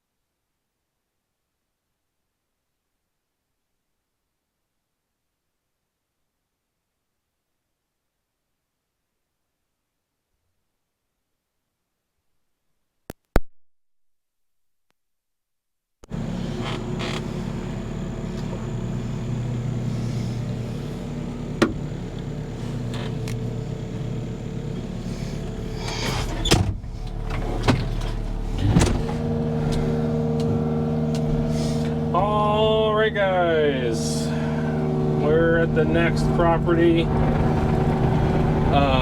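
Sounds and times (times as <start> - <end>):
engine running: 16.1 - 39.0
falling whines: 16.2 - 39.0
sharp clicks and creaks: 22.8 - 23.5.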